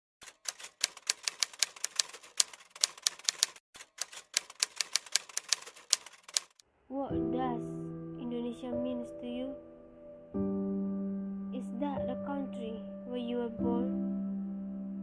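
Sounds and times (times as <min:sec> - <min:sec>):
typewriter keys clacking: 0:00.2 - 0:06.6.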